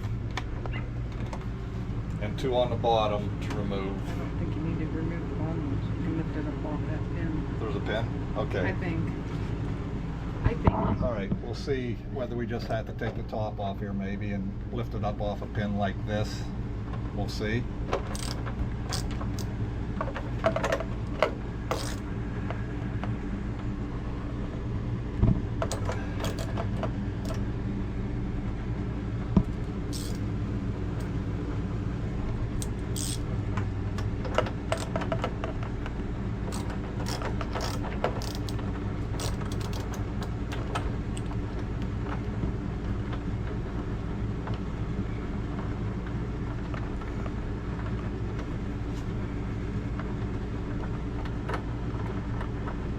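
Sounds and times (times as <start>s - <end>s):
steady low hum: 0.0s - 52.9s
metal clicks of hand tools: 18.1s - 19.5s, 21.7s - 22.0s, 30.0s - 30.2s, 32.6s - 33.2s, 36.5s - 38.6s, 39.2s - 41.3s.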